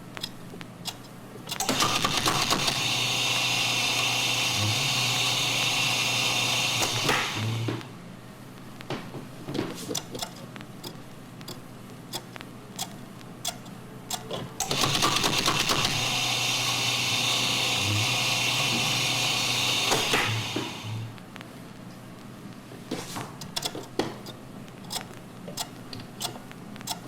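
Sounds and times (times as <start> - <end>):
sharp clicks and ticks: 0.1 - 4.1, 9.9 - 16.2, 23.4 - 27.0
small machine whirring: 0.2 - 8.0, 12.2 - 21.2.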